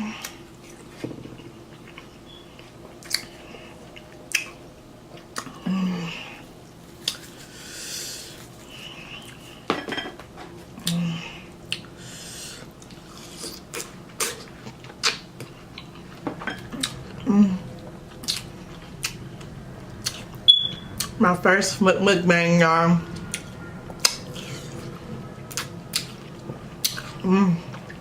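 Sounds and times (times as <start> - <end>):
eating sounds: 0.1 - 9.6, 10.8 - 20.4, 23.2 - 28.0
dishes and cutlery clinking: 9.7 - 10.2, 16.2 - 16.7.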